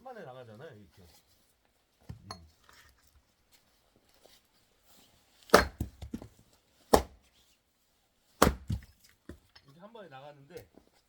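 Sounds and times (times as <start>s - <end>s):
axe chopping log: 5.4s - 6.3s, 6.9s - 7.2s, 8.4s - 9.4s.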